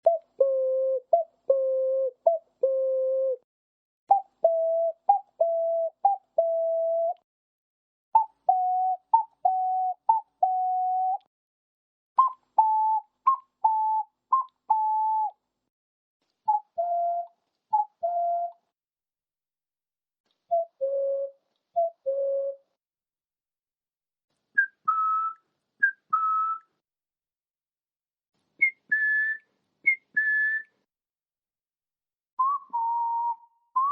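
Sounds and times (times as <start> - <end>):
ocarina cuckoo call: 0.0 - 3.4, 4.1 - 7.2, 8.2 - 11.3, 12.2 - 15.4, 16.5 - 18.7, 20.5 - 22.7, 24.6 - 26.7, 28.6 - 30.8, 32.4 - 33.9.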